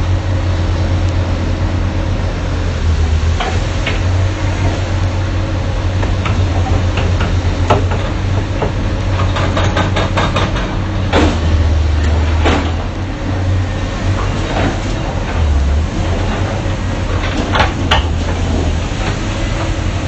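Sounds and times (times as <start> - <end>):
excavator diesel engine running: 0.0 - 20.0
metal clanks and knocks: 6.0 - 13.0, 14.1 - 19.8.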